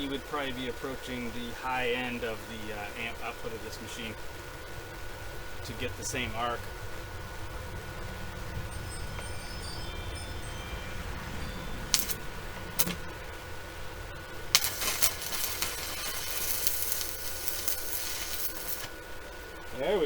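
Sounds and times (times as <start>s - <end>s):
sharp cracks of welding arc: 11.9s - 12.2s, 12.8s - 13.2s, 14.4s - 19.2s
arc welder crackling: 11.9s - 20.0s.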